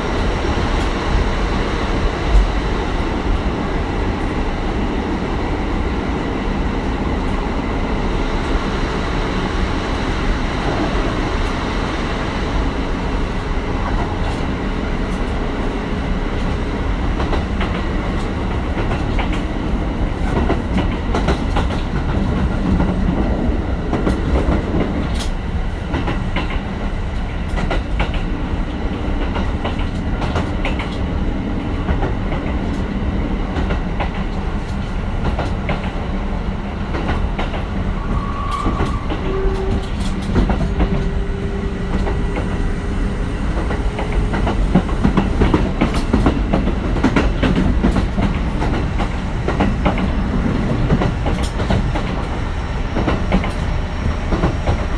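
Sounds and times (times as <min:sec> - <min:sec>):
train wheels rumbling on rail: 0:00.0 - 0:54.9
rail-joint clicks: 0:13.3 - 0:54.9.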